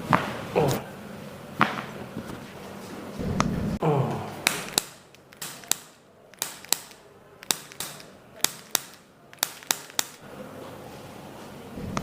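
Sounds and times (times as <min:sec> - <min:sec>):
sharp clicks: 0:04.4 - 0:10.2.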